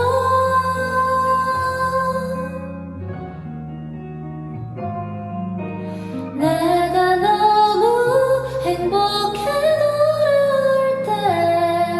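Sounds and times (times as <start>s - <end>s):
woman singing: 0.0s - 2.9s, 6.0s - 11.9s
soft ballad instrumental: 0.0s - 11.9s.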